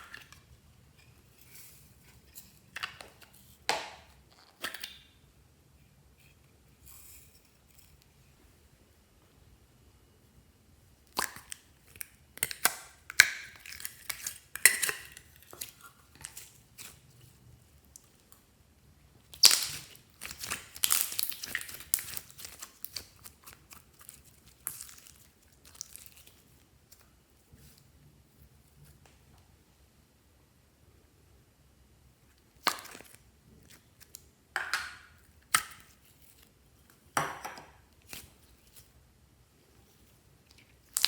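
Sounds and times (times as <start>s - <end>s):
slime squishing and popping: 19.3s - 26.2s.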